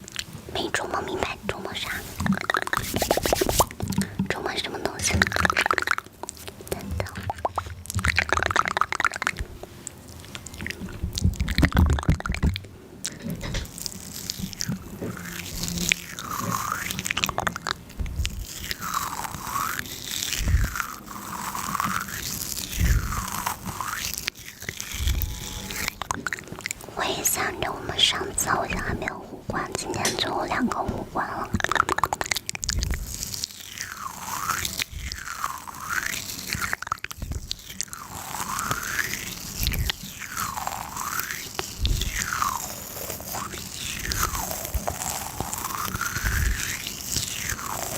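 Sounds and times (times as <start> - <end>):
wet chewing and biting: 0.0 - 47.9
swishing sweep: 2.8 - 3.7.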